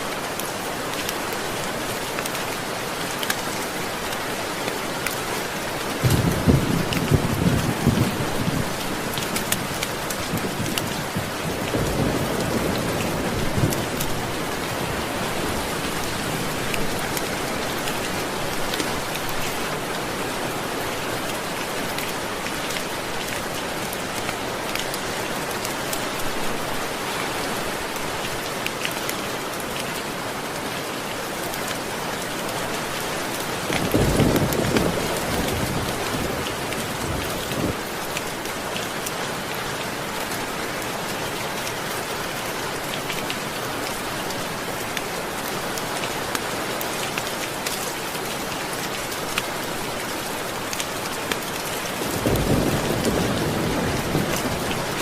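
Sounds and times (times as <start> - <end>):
steady rain: 0.0 - 55.0
thunder rumbling: 52.0 - 55.0.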